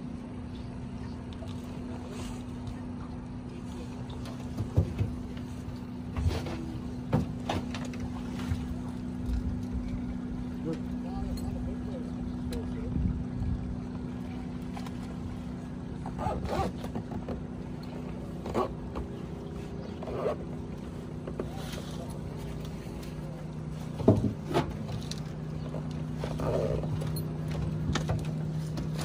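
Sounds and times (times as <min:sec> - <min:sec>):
boat motor humming: 0:00.0 - 0:29.0
knocks and bumps on board: 0:04.5 - 0:05.4, 0:24.0 - 0:24.8.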